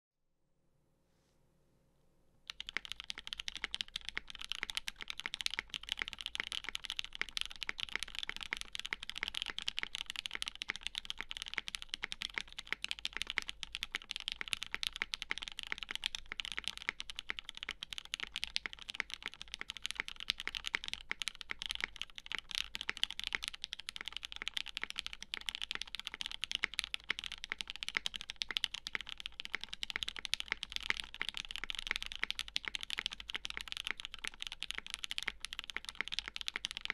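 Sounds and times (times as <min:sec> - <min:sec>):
fast typing on mechanical keyboard: 0:02.5 - 0:36.9.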